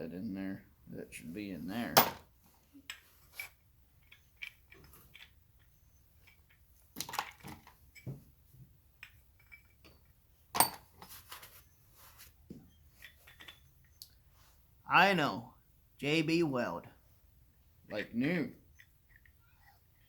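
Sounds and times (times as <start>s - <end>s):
metal parts clinking and knocking: 1.9s - 11.6s, 12.7s - 14.0s.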